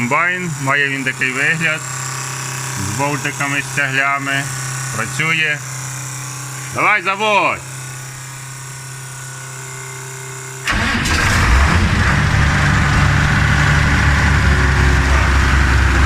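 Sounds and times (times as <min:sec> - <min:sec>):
steady hum: 0:00.0 - 0:16.0
diesel engine starting and running: 0:10.6 - 0:16.0.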